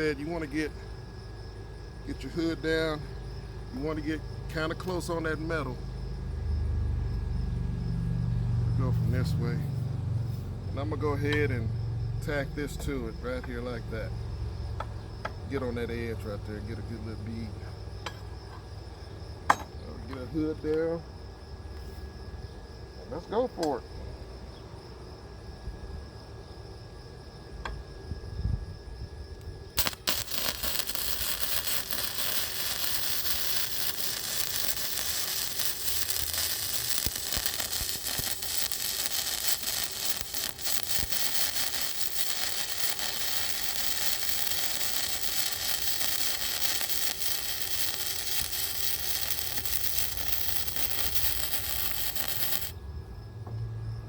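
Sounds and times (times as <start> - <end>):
welding arc crackling sizzle: 0.0 - 0.8, 29.8 - 52.8.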